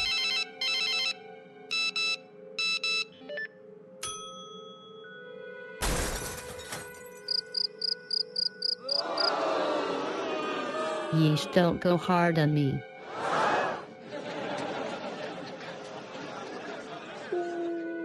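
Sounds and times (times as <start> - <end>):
electronic phone ring: 0.0 - 3.5
background music: 0.0 - 18.0
chime: 4.0 - 5.3.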